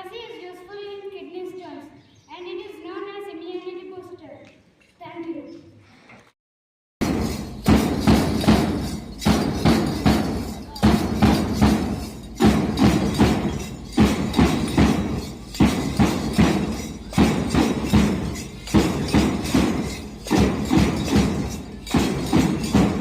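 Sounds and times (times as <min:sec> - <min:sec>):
music with percussive beat: 0:07.0 - 0:23.0.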